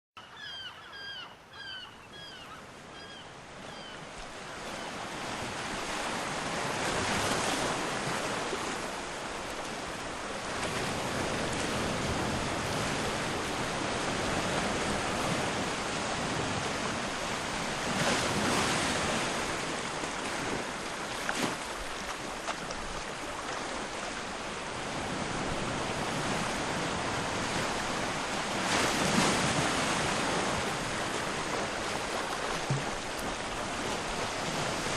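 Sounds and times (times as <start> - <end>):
surf washing onto shore: 4.0 - 34.9.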